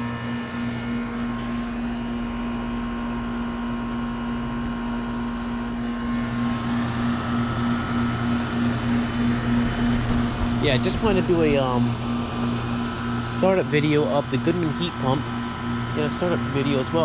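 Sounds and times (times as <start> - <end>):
compressor electrical hum: 0.0 - 17.0
fan whoosh: 0.0 - 17.0.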